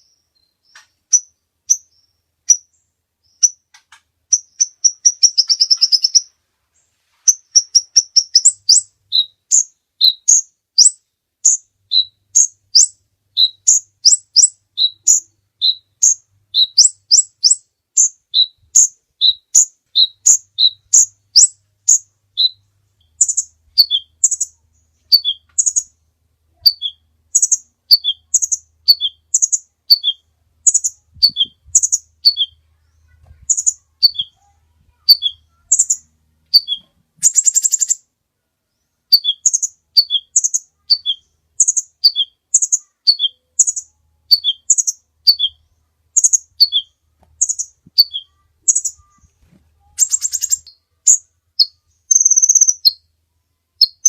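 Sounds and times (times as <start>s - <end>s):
sunbird singing high notes: 46.2s - 49.2s.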